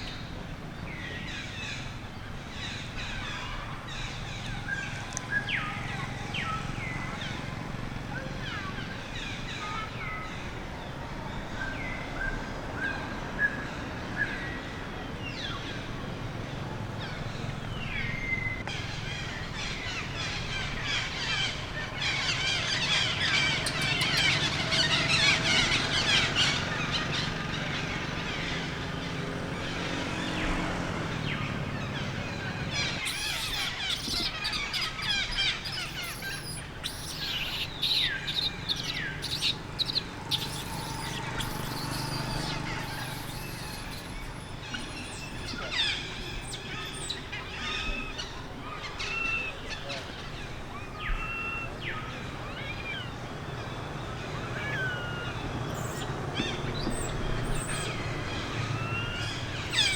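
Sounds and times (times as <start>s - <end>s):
outdoor background noise: 0.0s - 59.9s
high-pitched chirping calls: 22.2s - 27.2s, 32.7s - 48.3s, 54.6s - 59.9s.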